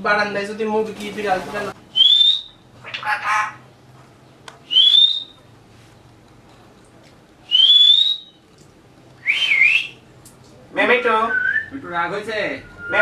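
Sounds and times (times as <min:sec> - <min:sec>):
parrot squeaky rising whistles: 0:02.0 - 0:02.6, 0:04.7 - 0:05.4, 0:07.5 - 0:08.3.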